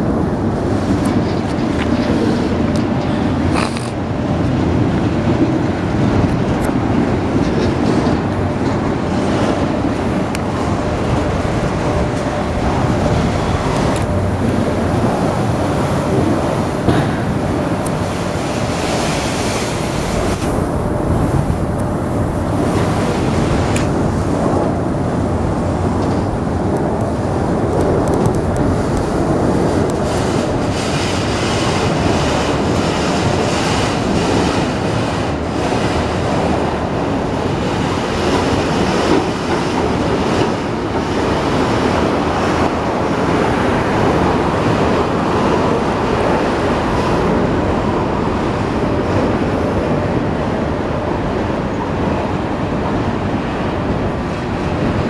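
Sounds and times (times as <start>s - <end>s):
train wheels rumbling on rail: 0.0s - 55.0s
train clicks: 0.8s - 18.2s, 26.0s - 48.4s.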